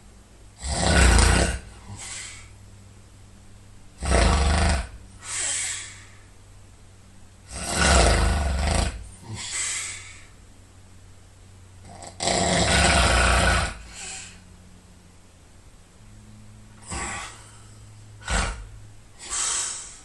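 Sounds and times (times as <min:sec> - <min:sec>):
man snoring loudly: 0:00.6 - 0:02.3, 0:04.0 - 0:05.5, 0:07.5 - 0:09.6, 0:11.8 - 0:14.1, 0:16.8 - 0:17.4, 0:18.2 - 0:18.7
hissing breath: 0:01.8 - 0:02.6, 0:05.2 - 0:06.3, 0:09.3 - 0:10.4, 0:13.8 - 0:14.4, 0:16.8 - 0:20.0.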